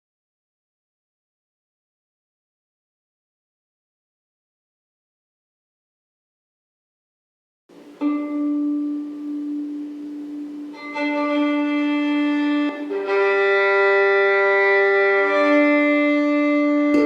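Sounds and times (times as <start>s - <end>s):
slow bowed violin melody: 7.7s - 17.0s.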